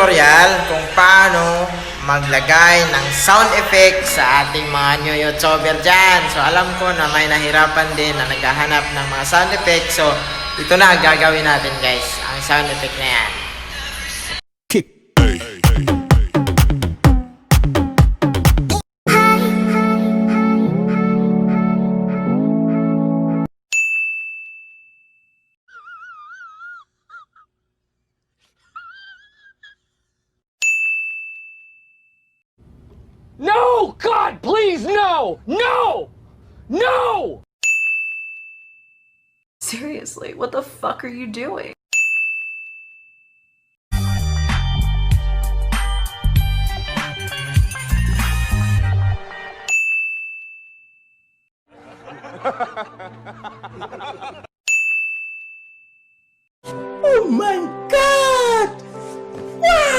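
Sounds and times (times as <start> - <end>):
jittery wavering voice-like sound: 15.2 - 16.4
music clip: 15.2 - 23.5
high bell-like ding: 23.7 - 25.4, 30.6 - 32.2, 37.6 - 39.2, 41.9 - 43.3, 49.7 - 51.2, 54.7 - 56.3
bright ding: 30.6 - 32.0, 54.7 - 56.1.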